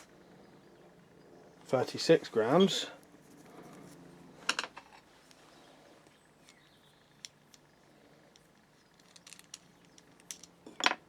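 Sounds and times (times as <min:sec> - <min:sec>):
crossbow bolts clicking when handled: 0:06.4 - 0:07.7, 0:08.3 - 0:10.6.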